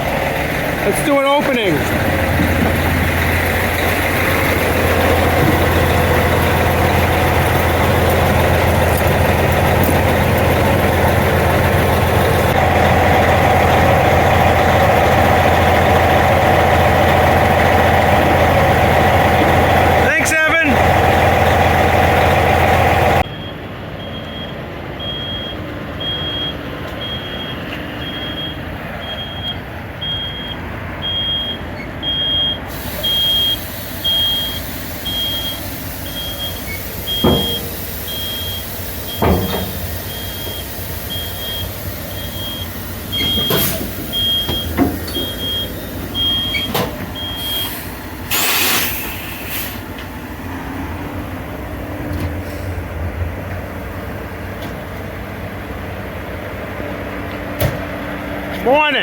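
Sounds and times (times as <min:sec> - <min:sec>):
heavy vehicles running: 0:00.0 - 0:59.0
backup alarm beeping: 0:23.2 - 0:47.9
sharp knocks and clunks: 0:37.2 - 0:37.7, 0:39.1 - 0:39.9, 0:43.2 - 0:45.4.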